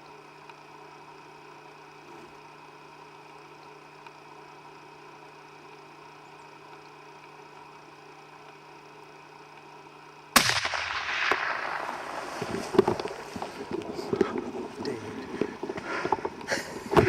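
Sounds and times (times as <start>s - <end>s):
faint steady hum: 0.0s - 17.0s
rifle shot with echo: 10.4s - 13.4s.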